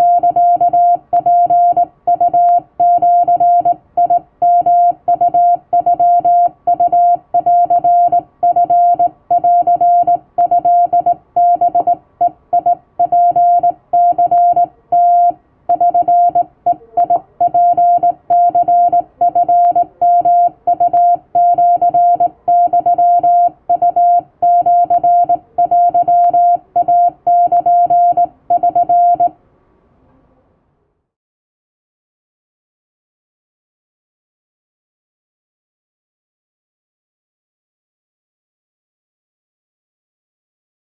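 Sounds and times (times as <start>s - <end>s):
morse code tone: 0.0s - 29.3s.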